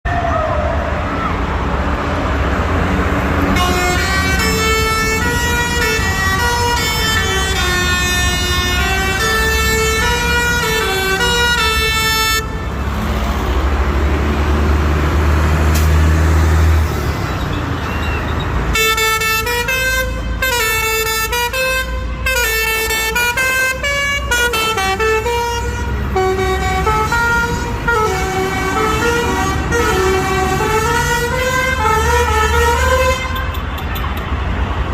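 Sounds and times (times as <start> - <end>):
bus horn playing a tune: 3.4 - 12.8, 18.7 - 33.9.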